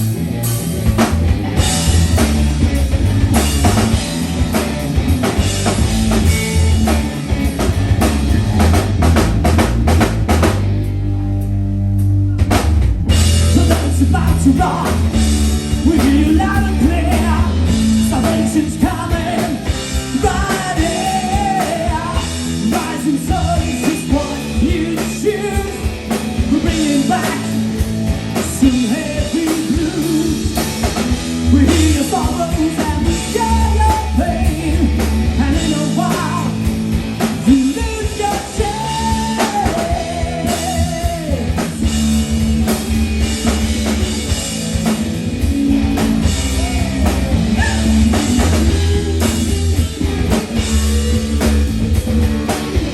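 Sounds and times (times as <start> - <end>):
bass guitar: 0.0 - 52.9
drum kit: 0.0 - 52.9
electric guitar lead line: 0.0 - 52.9
person singing: 13.5 - 27.7, 28.6 - 30.7, 37.5 - 42.0, 46.2 - 52.9.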